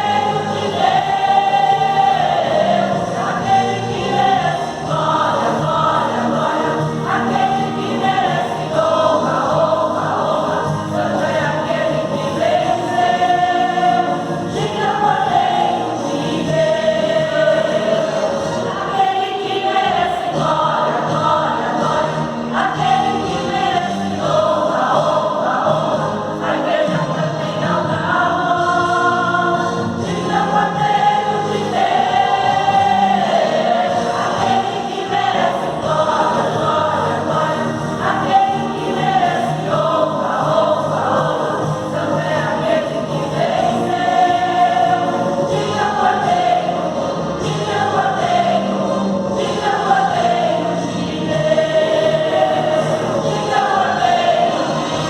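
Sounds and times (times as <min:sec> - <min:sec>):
choir singing gospel song: 0:00.0 - 0:55.0.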